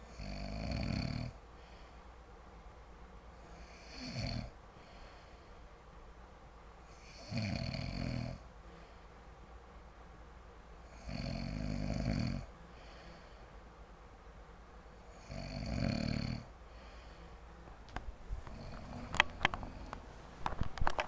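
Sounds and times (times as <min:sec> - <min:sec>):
man snoring: 0:00.0 - 0:01.4, 0:03.4 - 0:05.0, 0:06.9 - 0:08.5, 0:10.8 - 0:13.4, 0:15.0 - 0:17.2, 0:18.5 - 0:20.0
quiet breathing: 0:00.0 - 0:10.1, 0:10.7 - 0:20.9.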